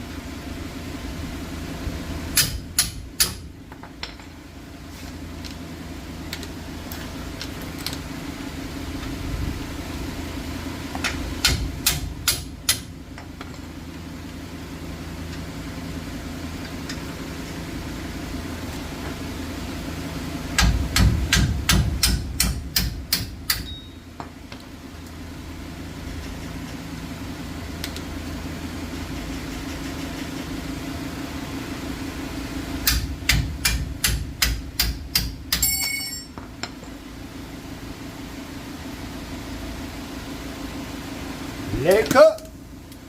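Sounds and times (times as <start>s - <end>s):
steady low hum: 0.0s - 43.0s
hammer striking metal: 2.4s - 3.4s, 32.9s - 36.4s.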